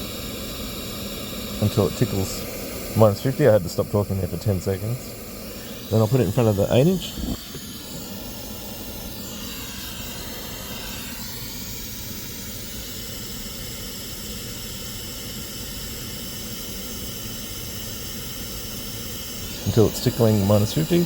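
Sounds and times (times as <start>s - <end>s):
white test noise through speakers: 0.0s - 13.2s, 17.1s - 21.0s.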